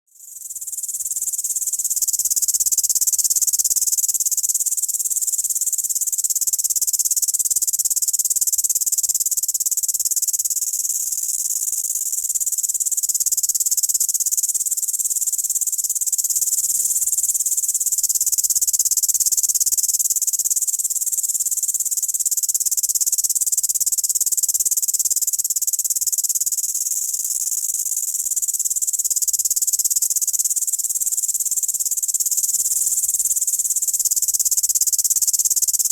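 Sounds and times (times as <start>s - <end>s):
grasshopper buzzing chirr: 0.2s - 35.9s.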